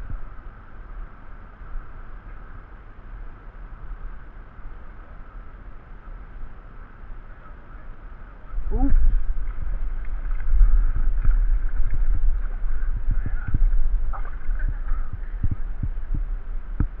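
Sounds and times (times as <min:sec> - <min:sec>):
wind buffeting microphone: 0:08.5 - 0:17.0.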